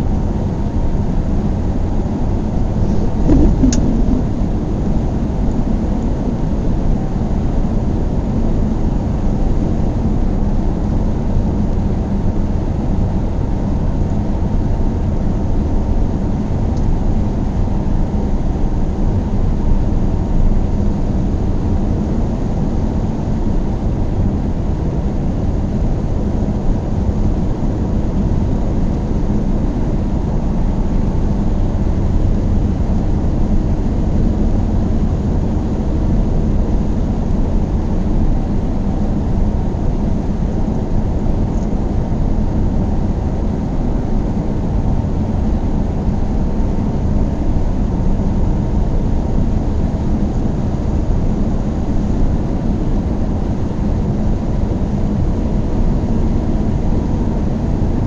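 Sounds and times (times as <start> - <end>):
car driving on road: 2.7 - 4.9.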